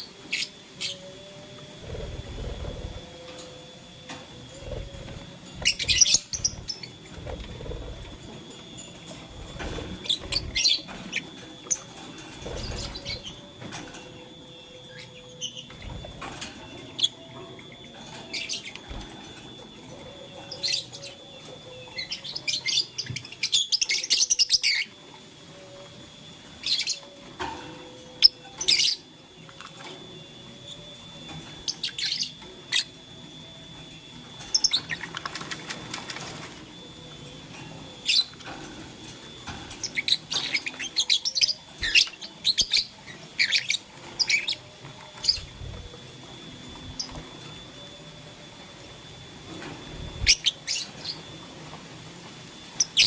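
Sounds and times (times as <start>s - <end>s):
birds chirping shrilly: 1.8s - 3.4s, 4.4s - 13.6s.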